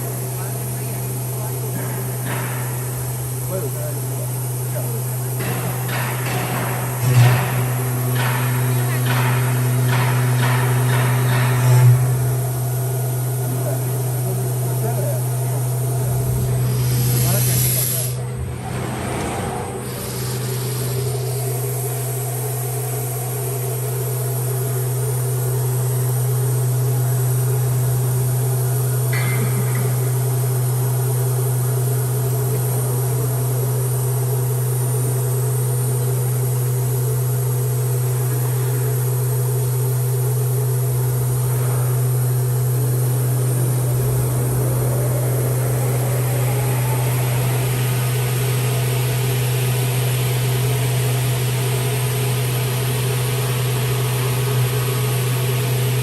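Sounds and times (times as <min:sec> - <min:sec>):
machine low hum: 0:00.0 - 0:56.0
machine higher tones: 0:43.0 - 0:51.0
faint rising pitch: 0:43.5 - 0:49.8.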